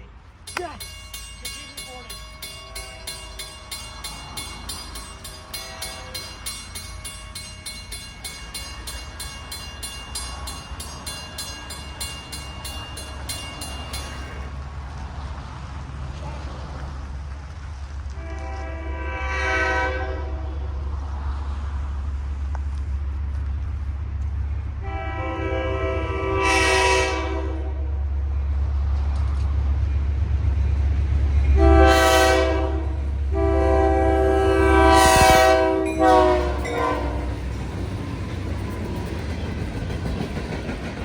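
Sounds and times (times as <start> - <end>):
low rumble of train: 0.0 - 41.0
locomotive air horn blasts: 5.4 - 6.4, 18.2 - 20.6, 24.8 - 27.9, 31.6 - 37.4.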